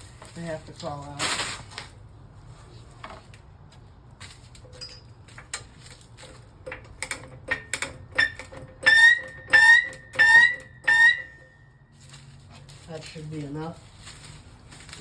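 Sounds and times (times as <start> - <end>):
high squeak of jack handle: 7.5 - 11.6.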